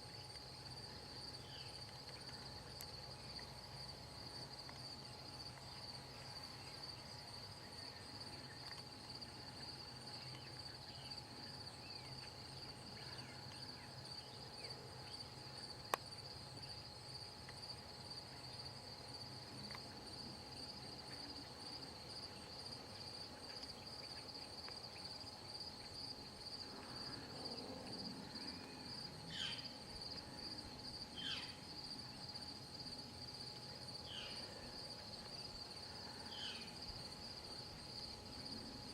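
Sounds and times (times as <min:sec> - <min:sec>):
crickets chirping: 0:00.0 - 0:38.9
faint low hum: 0:00.0 - 0:38.9.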